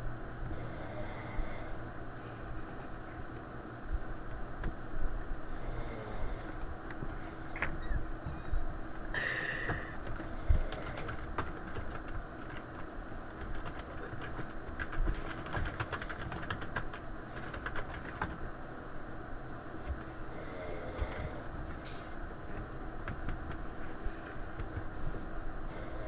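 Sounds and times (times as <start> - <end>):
steady background noise: 0.0 - 26.0
keyboard typing: 9.7 - 18.4.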